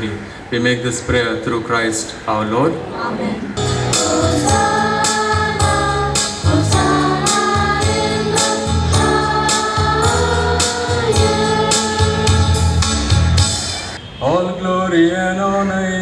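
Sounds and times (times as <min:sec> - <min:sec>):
choir singing a hymn: 0:03.6 - 0:13.1
bass notes: 0:03.6 - 0:14.0
percussion beat: 0:03.6 - 0:14.0.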